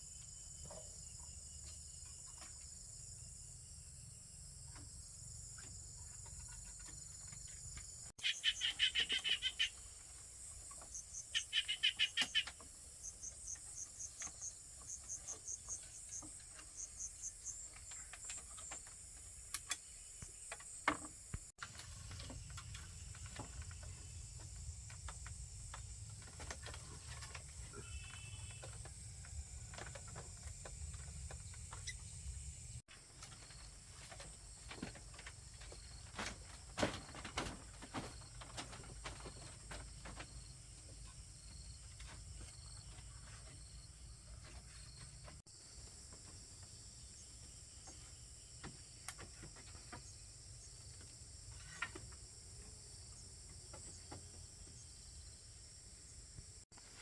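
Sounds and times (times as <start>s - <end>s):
rapid pulsed insect chirping: 0.0s - 37.2s.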